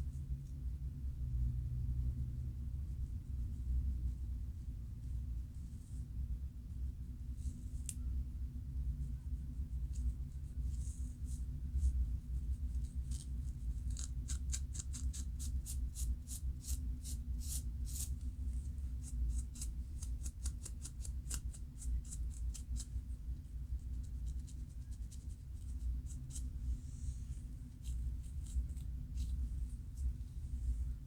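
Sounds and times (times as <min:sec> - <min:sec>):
steady low hum: 0:00.0 - 0:31.0
scalp scratching scrapes: 0:12.8 - 0:18.2, 0:24.2 - 0:30.1.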